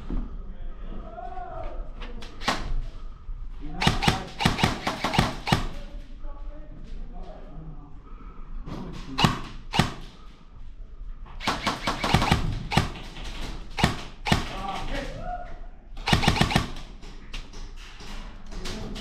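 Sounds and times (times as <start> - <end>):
airsoft guns firing: 2.4 - 2.9, 3.8 - 5.9, 9.1 - 10.3, 11.4 - 15.1, 16.0 - 17.1.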